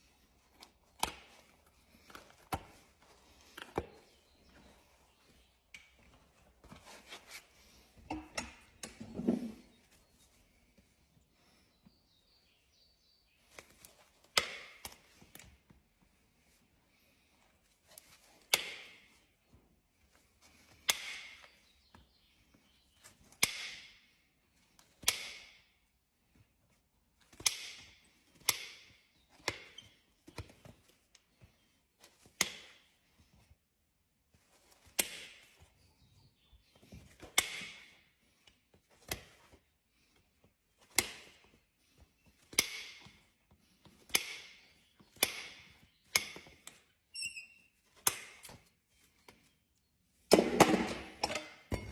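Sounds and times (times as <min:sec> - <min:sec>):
hoof trimming snaps and scrapes: 0:00.4 - 0:04.7, 0:13.6 - 0:15.6, 0:17.9 - 0:19.1, 0:20.7 - 0:22.2, 0:23.0 - 0:24.0, 0:24.7 - 0:25.6, 0:27.2 - 0:32.9, 0:34.6 - 0:39.6, 0:40.8 - 0:41.6, 0:42.2 - 0:47.0, 0:47.8 - 0:49.9.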